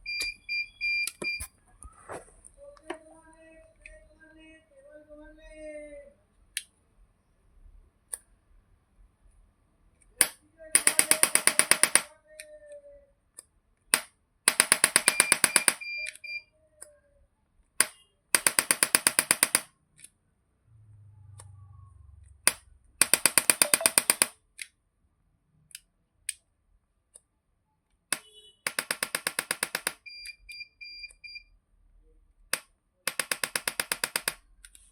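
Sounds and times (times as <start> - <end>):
adjusting gun rapid clacks: 32.5 - 34.8.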